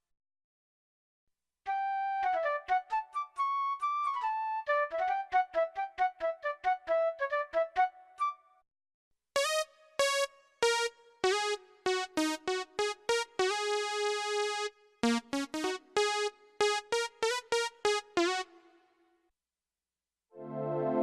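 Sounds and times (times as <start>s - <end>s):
digital piano melody: 9.4s - 18.6s, 20.4s - 21.0s.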